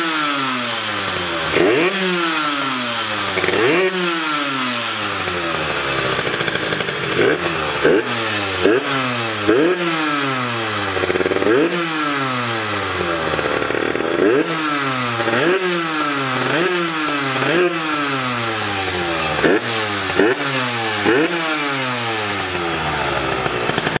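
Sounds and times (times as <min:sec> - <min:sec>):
two-stroke engine revving: 0:00.0 - 0:24.0.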